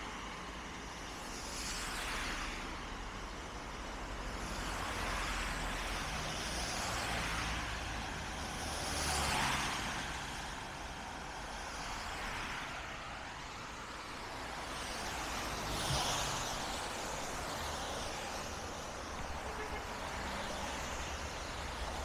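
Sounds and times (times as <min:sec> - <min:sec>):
tyres hissing on wet asphalt: 0:00.9 - 0:22.0.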